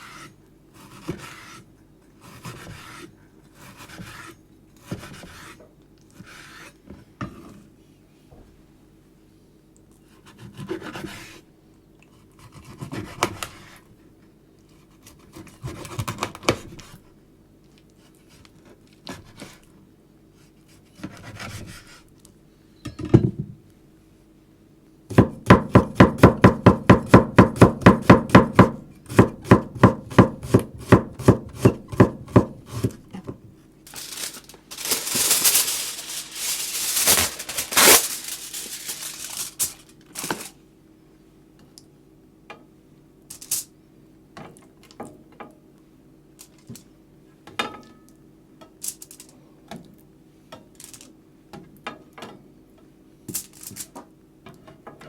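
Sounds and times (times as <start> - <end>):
knife chopping on cutting board: 25.1 - 33.0
rustling: 33.9 - 40.6.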